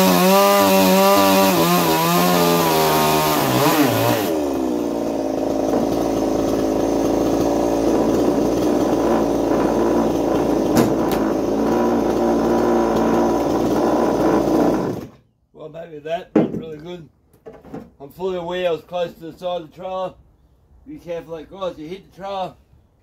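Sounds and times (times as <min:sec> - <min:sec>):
chainsaw idling: 0:00.0 - 0:15.2
sharp knocks: 0:10.7 - 0:11.3.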